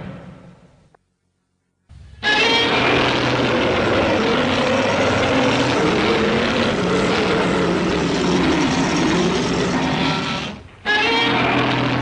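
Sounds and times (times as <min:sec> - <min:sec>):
loud rushing noise with wavering drone: 0:02.0 - 0:10.7.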